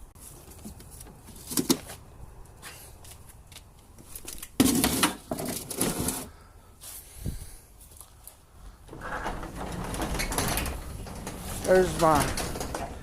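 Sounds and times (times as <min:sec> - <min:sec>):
scrap rattling and scraping: 0:04.0 - 0:06.3, 0:08.8 - 0:13.0.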